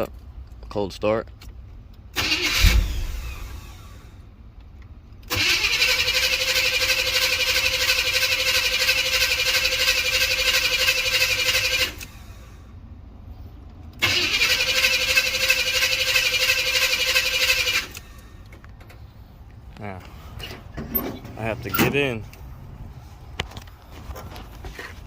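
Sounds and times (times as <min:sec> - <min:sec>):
engine starter cranking: 0:02.1 - 0:04.1, 0:05.2 - 0:12.4, 0:13.9 - 0:19.0.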